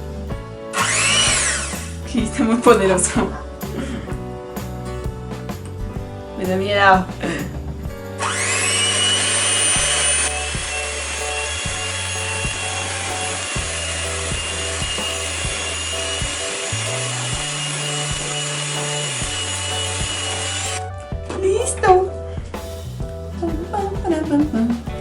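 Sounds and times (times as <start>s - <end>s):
electric mixer whining: 0.8s - 2.0s, 8.2s - 20.9s.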